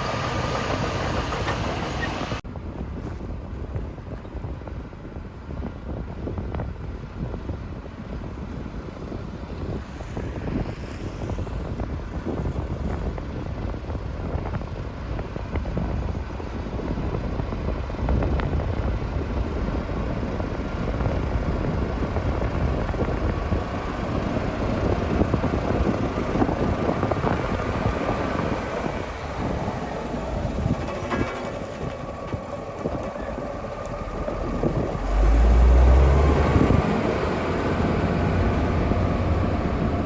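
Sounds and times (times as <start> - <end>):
diesel construction machinery running: 0.0 - 2.4, 11.3 - 40.0.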